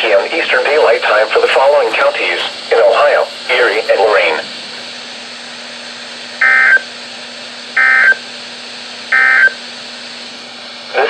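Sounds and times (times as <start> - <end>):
broadcast hiss: 0.0 - 5.6.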